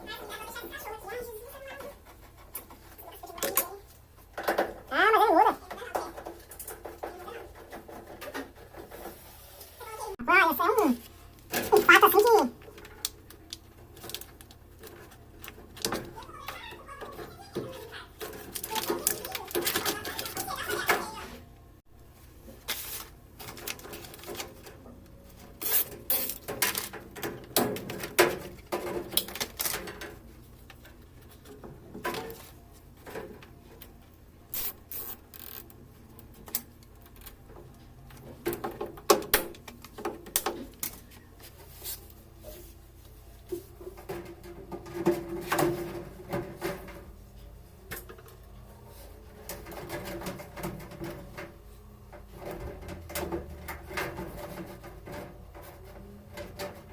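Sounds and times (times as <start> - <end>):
clatter of parts and tools handled: 16.9 - 21.0, 23.4 - 33.8.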